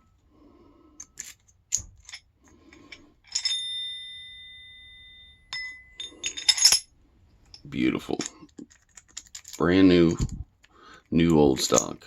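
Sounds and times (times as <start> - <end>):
ringing metal clink: 1.0 - 6.9
keys and padlock clicking: 8.1 - 9.6.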